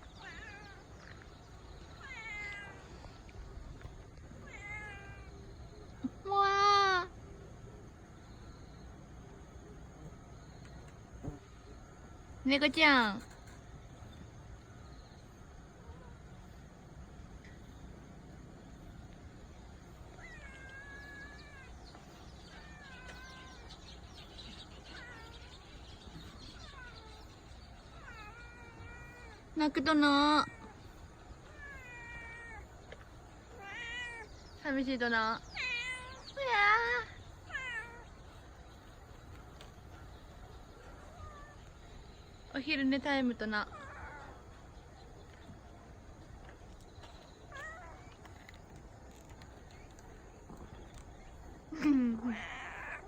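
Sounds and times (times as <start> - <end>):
cat meowing: 2.0 - 2.9, 4.4 - 5.4, 37.5 - 38.1, 52.2 - 53.0.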